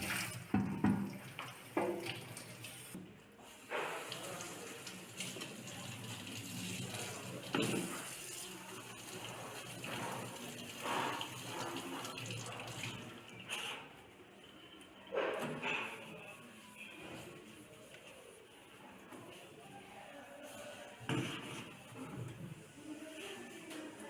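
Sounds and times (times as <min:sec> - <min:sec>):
tap water running into sink: 0:00.0 - 0:03.0, 0:03.8 - 0:13.6.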